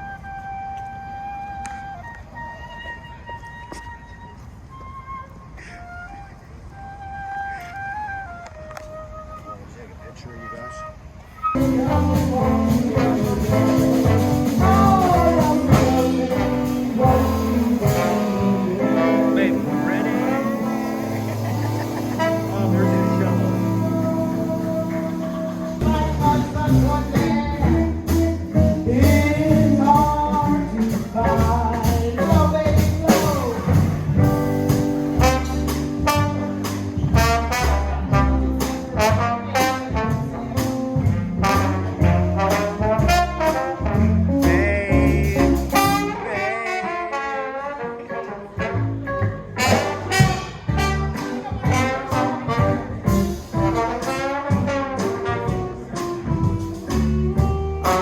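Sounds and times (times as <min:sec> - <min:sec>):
bass: 0:00.0 - 0:58.0
jazz brass horns: 0:11.4 - 0:58.0
drum beat: 0:11.6 - 0:18.8, 0:20.0 - 0:46.2, 0:49.8 - 0:58.0.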